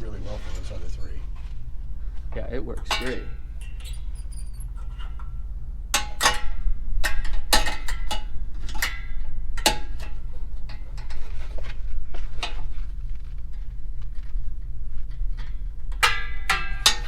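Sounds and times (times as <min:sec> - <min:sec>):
metal springs clinking: 0:00.0 - 0:11.4, 0:15.9 - 0:17.0
steady low hum: 0:00.0 - 0:17.0.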